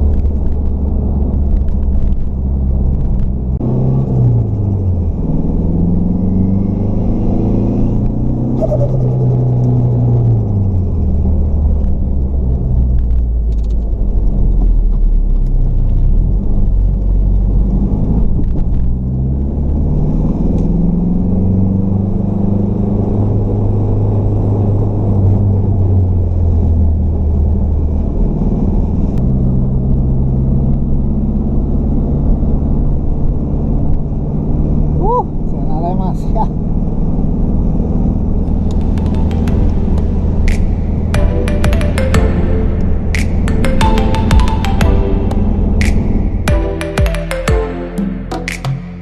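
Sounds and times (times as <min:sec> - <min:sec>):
car engine running: 0:37.3 - 0:41.2.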